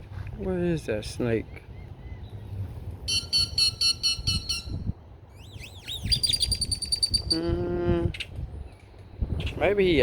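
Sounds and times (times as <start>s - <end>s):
songbird chirping and trilling: 1.1s - 7.5s.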